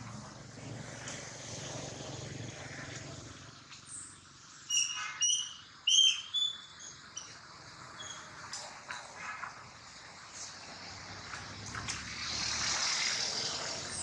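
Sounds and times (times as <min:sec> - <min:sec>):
bird chirping: 0:03.9 - 0:07.4, 0:08.0 - 0:08.3.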